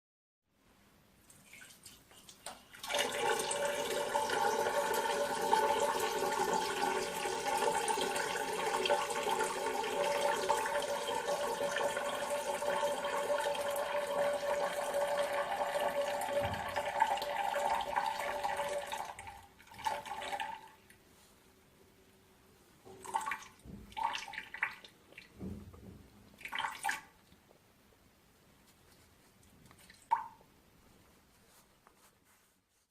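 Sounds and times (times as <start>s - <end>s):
person urinating into water: 1.3s - 20.8s, 23.0s - 25.4s, 26.4s - 27.2s.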